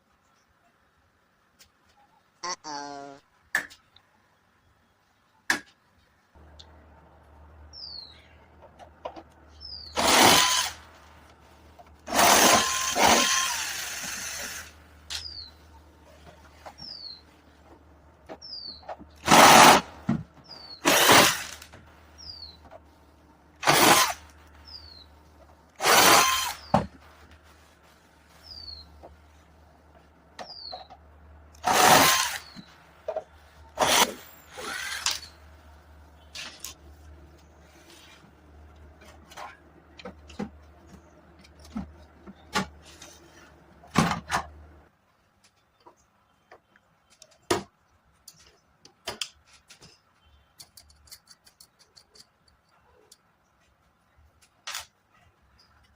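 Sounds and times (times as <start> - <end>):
small bird chirping: 7.7 - 8.4, 9.5 - 10.0, 16.8 - 17.3, 18.4 - 18.9, 22.2 - 22.6, 24.6 - 25.2, 28.4 - 29.0, 30.4 - 30.9
small power tool running: 9.9 - 10.8, 12.1 - 14.7, 23.6 - 24.3, 25.8 - 26.6, 31.6 - 32.6, 33.8 - 35.3.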